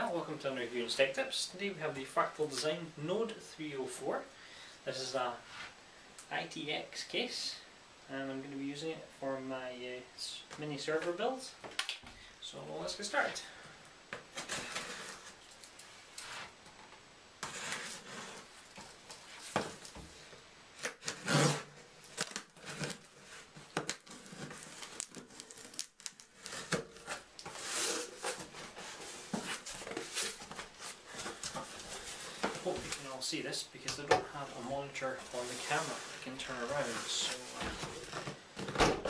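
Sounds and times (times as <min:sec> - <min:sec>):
tape and cardboard tearing: 0:17.4 - 0:20.0, 0:20.8 - 0:33.0
packaging rustling and crinkling: 0:17.4 - 0:33.2.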